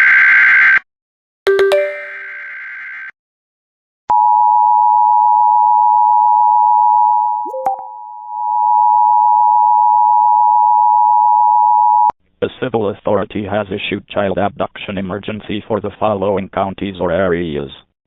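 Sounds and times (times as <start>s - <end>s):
two-tone alert signal: 1.5s - 2.6s, 7.5s - 8.1s
electronic chime: 1.5s - 2.8s, 7.5s - 8.1s
click and rising chirp: 7.5s - 8.0s.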